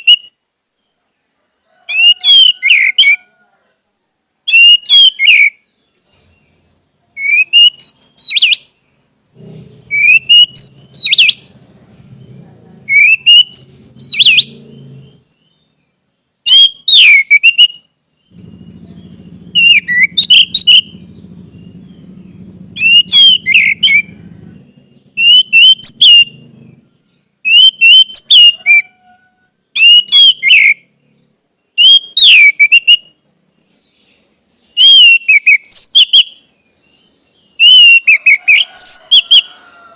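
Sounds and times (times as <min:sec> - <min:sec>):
thrush singing: 0:06.0 - 0:15.5, 0:18.3 - 0:27.0
low steady hum: 0:17.9 - 0:27.4.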